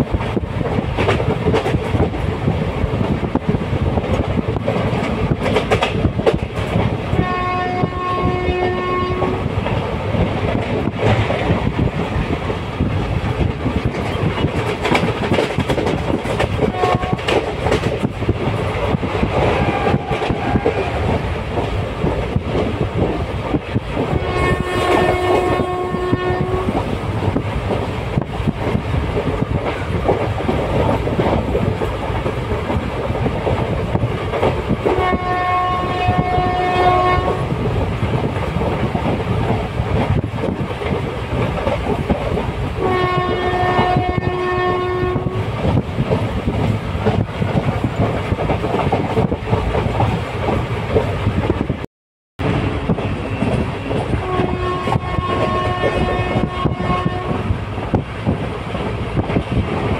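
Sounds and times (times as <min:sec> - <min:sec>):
train rumbling on rails: 0:00.0 - 0:59.9
train horn blasts: 0:07.1 - 0:09.5, 0:16.6 - 0:17.4, 0:19.5 - 0:21.0, 0:24.0 - 0:26.8, 0:34.9 - 0:37.5, 0:42.8 - 0:45.5, 0:54.1 - 0:57.5.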